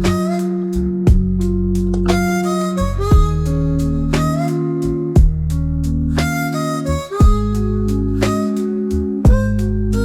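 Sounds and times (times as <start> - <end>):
plucked guitar-like notes: 0.0 - 10.0
sustained bass: 0.0 - 10.0
deep drum hit: 1.1 - 2.2, 3.1 - 3.4, 5.2 - 5.6, 9.3 - 9.5.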